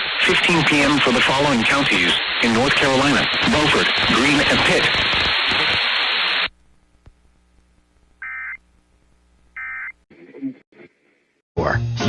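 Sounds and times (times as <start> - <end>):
hissy broadcast voice: 0.0 - 6.0
short electronic data bursts: 8.2 - 8.6, 9.6 - 10.0.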